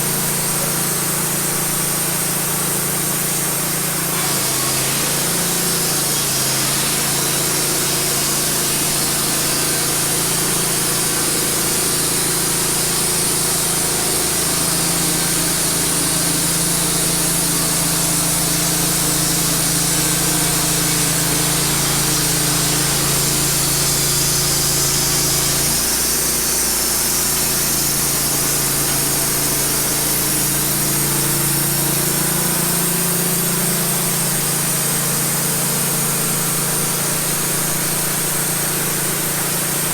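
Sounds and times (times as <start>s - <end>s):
sawmill engine humming: 0.0s - 39.9s
band blade sawing log with hiss: 4.0s - 35.6s.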